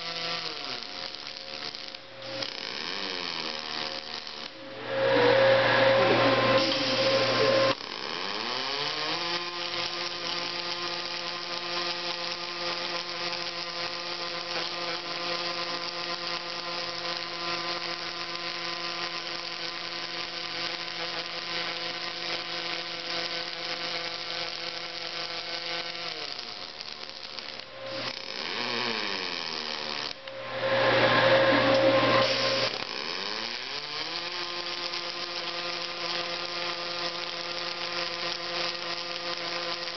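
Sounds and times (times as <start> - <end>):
harsh welding noise: 0.0 - 39.9
machine whine: 0.0 - 39.9.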